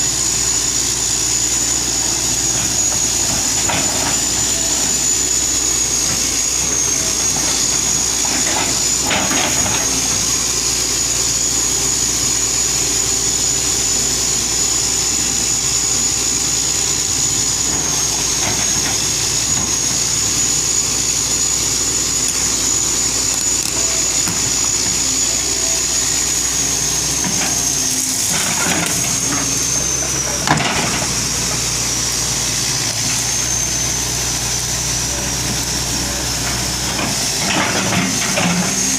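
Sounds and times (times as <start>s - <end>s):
excavator diesel engine running: 0.0s - 38.9s
thin high whine: 0.0s - 38.9s.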